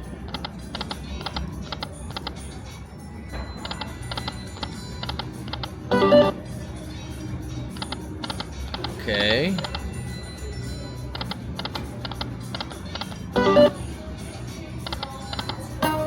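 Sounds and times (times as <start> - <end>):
slot machine reels clicking: 4.1 - 6.4, 11.2 - 13.8
electronic tones: 5.9 - 6.4, 13.4 - 13.8.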